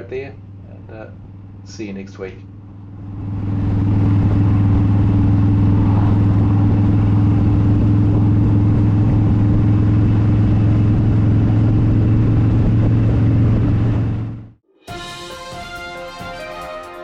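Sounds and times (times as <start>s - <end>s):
motorcycle engine cruising: 0.0s - 14.6s.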